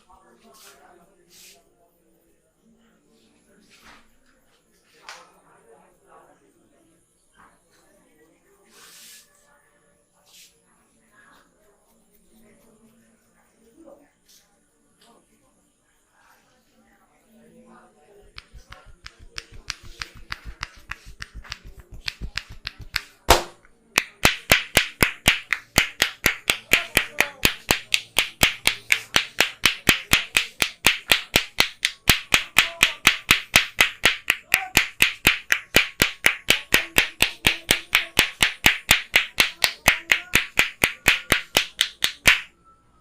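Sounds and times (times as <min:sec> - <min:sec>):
hands slapping in massage: 0:18.2 - 0:42.5.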